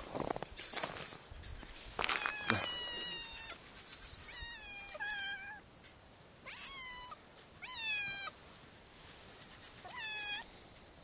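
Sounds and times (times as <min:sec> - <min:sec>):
cat meowing: 0:02.2 - 0:03.6, 0:04.3 - 0:05.6, 0:06.4 - 0:08.4, 0:09.8 - 0:10.5.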